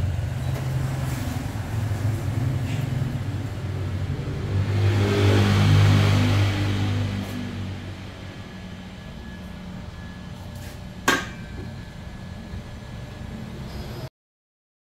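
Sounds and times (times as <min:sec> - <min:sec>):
low machine hum: 0:06.5 - 0:14.1
sharp knock: 0:11.0 - 0:11.6.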